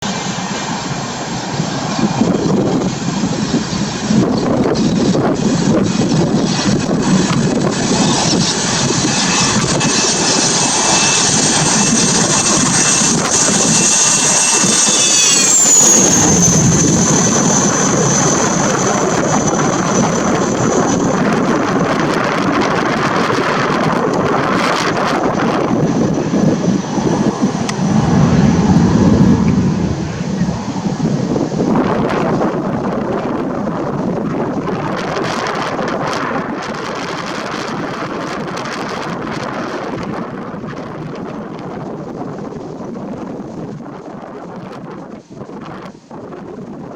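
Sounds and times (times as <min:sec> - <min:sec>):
wind buffeting microphone: 0:16.0 - 0:34.9
jet engines roaring and whining: 0:24.7 - 0:32.0.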